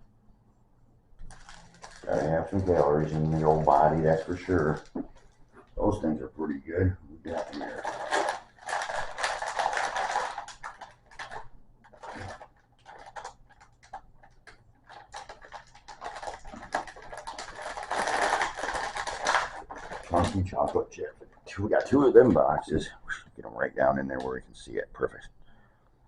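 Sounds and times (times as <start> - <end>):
packaging crinkling and clicking: 1.2 - 5.5, 7.3 - 20.9.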